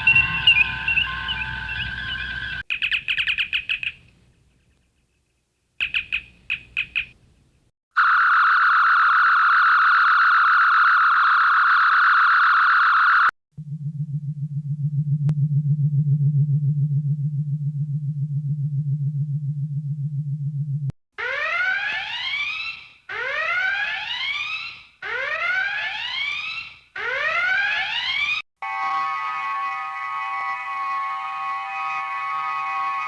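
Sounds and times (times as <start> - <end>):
fast-warbling high tone: 0.0 - 2.6
high electronic chirps: 0.0 - 2.6
low pulsing hum: 0.0 - 2.6, 13.6 - 20.9.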